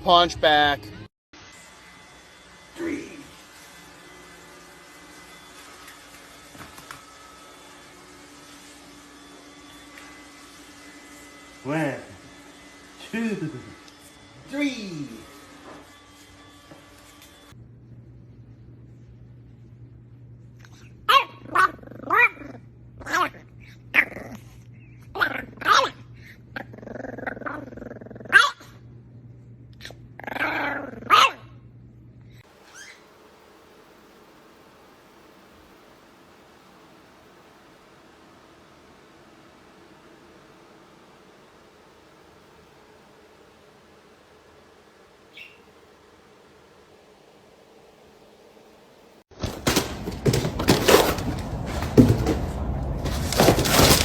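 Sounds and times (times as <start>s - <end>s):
steady low hum: 17.4s - 54.0s
dog barking: 21.1s - 22.4s, 25.2s - 26.0s, 28.3s - 28.7s, 31.0s - 31.5s
dog growling: 21.4s - 24.6s, 25.2s - 25.9s, 26.5s - 28.6s, 29.8s - 31.4s.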